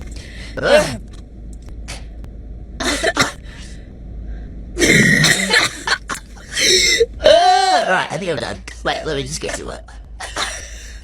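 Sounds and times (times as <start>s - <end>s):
person clearing throat: 0.6s - 1.0s, 4.8s - 7.1s
person coughing: 2.8s - 3.4s, 4.8s - 7.1s, 10.2s - 11.0s.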